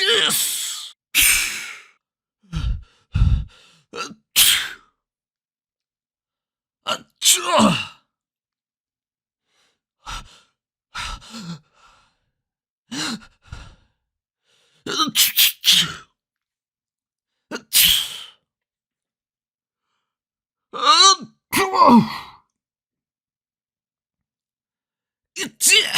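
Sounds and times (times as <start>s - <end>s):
person sneezing: 0.2s - 1.8s, 4.4s - 4.8s, 14.9s - 16.0s, 17.6s - 18.3s.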